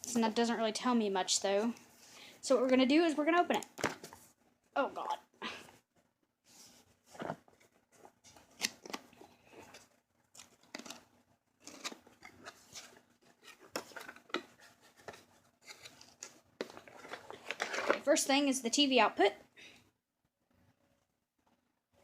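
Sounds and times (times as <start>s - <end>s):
packaging rustling: 8.2s - 18.1s.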